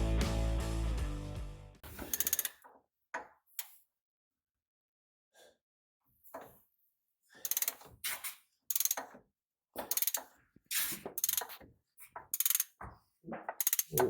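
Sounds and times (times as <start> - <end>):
ratchet wrench clicking: 2.0 - 2.6, 7.4 - 7.8, 8.7 - 9.0, 9.8 - 10.3, 11.2 - 11.5, 12.3 - 12.8, 13.6 - 14.0.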